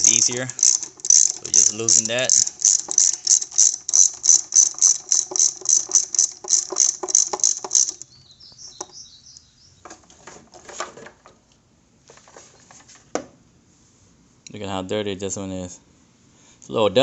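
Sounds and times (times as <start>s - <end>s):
socket ratchet ratcheting: 0.0s - 8.1s.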